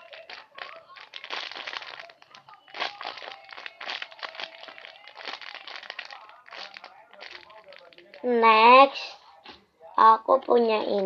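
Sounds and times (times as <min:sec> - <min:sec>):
foam toy crinkling: 0:00.0 - 0:08.5.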